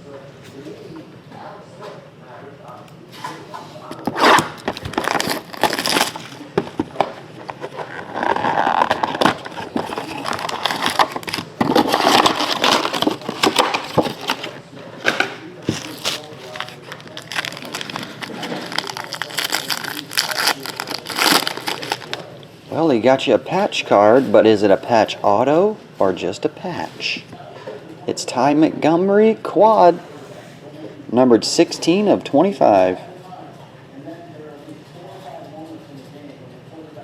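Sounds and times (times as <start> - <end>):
cardboard scraping: 4.0 - 14.6, 15.6 - 22.2
cards handled crackling: 4.2 - 14.6, 15.7 - 22.2
plastic wrap crinkling: 4.2 - 14.6, 15.6 - 22.3.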